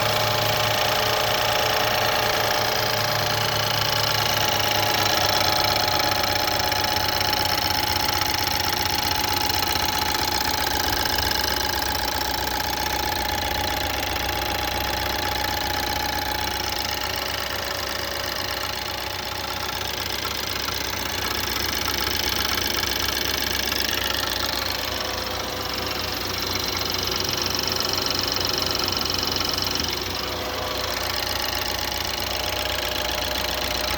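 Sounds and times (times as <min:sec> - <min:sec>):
car engine running: 0:00.0 - 0:33.9
engine knocking: 0:00.0 - 0:33.9.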